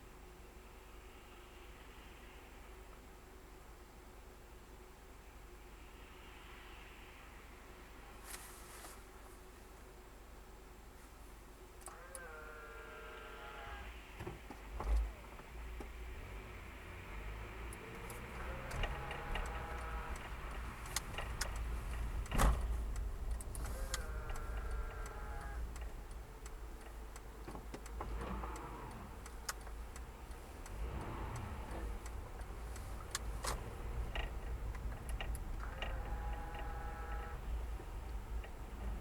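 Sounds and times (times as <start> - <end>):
road and engine rumble: 0.0 - 39.0
ticks and clicks: 17.7 - 38.6.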